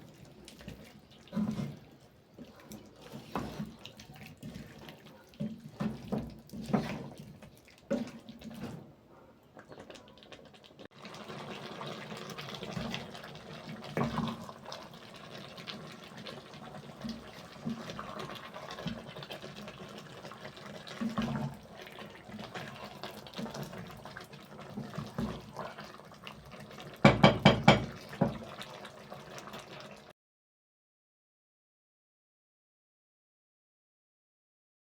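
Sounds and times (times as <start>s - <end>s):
tap water running into sink: 27.0s - 28.5s
knocks: 27.1s - 27.9s.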